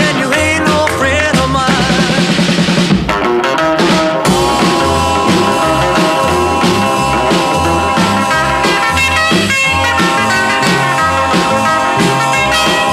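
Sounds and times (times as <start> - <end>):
instrumental rock and roll music: 0.0 - 12.9.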